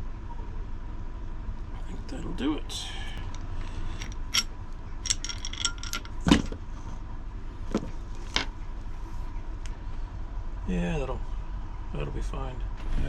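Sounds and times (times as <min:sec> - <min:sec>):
steady low hum: 0:00.0 - 0:13.0
metal tools clicking and clinking: 0:04.0 - 0:06.6.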